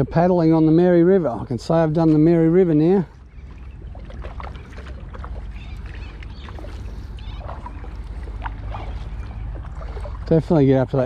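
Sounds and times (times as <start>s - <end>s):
steady low rumble: 0.0s - 11.0s
paddle splashing in water: 1.8s - 11.0s
water dripping off paddle: 3.1s - 10.5s.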